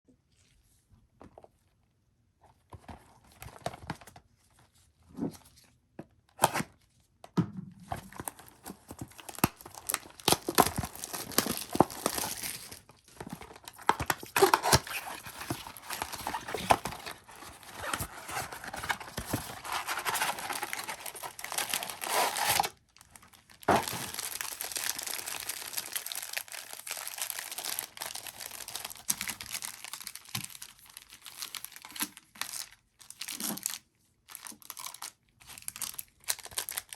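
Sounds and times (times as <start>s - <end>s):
packaging tearing and crinkling: 8.0s - 36.9s.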